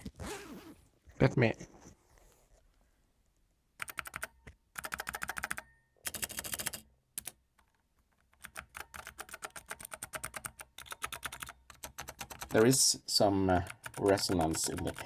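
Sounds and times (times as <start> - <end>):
mechanical keyboard typing: 3.8 - 7.4, 8.4 - 12.8, 13.6 - 15.0.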